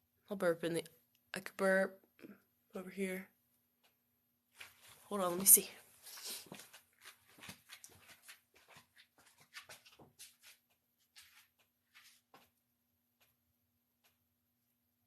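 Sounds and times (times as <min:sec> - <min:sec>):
faint clicks and rustles: 0:04.6 - 0:12.5.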